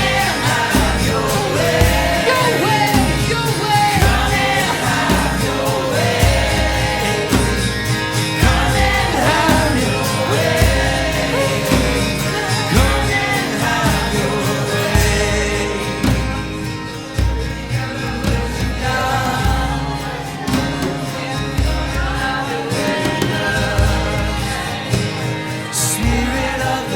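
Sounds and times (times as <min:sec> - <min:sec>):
person singing: 0:00.0 - 0:16.4
band playing worship music: 0:00.0 - 0:26.9.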